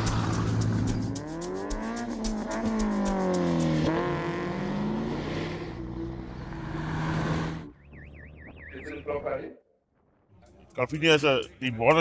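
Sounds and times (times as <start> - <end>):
car engine running: 0.0 - 8.9.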